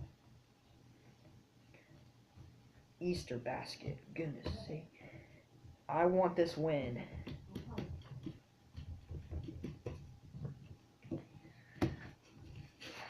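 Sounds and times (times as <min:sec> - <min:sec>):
hands tapping play dough: 0:06.9 - 0:13.0.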